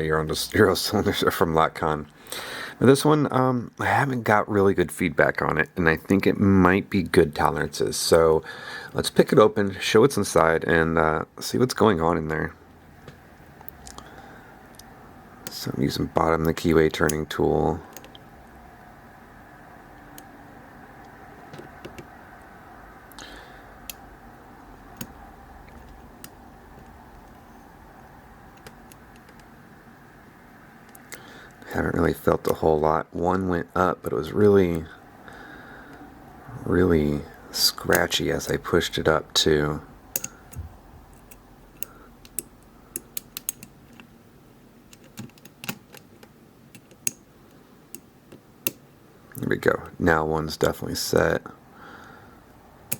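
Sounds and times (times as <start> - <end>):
lock pick clicking: 40.1 - 44.1, 44.9 - 47.2.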